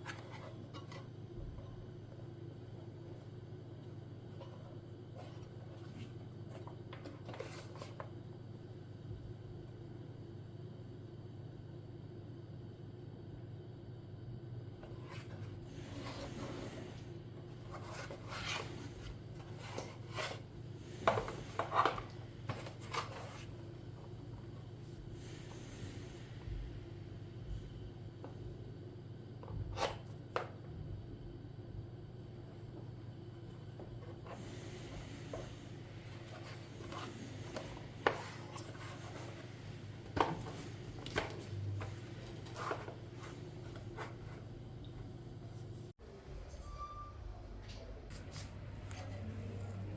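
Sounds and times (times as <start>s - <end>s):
steady low hum: 0.0s - 49.9s
hands rubbing and scraping objects: 34.2s - 44.5s.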